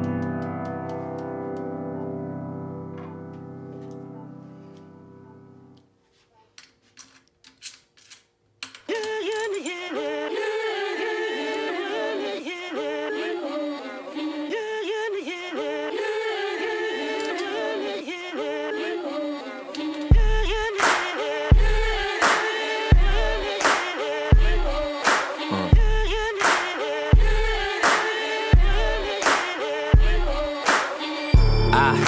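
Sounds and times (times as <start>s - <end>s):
sustained keyboard chord: 0.0s - 5.8s
wavering sung melody: 31.0s - 32.0s.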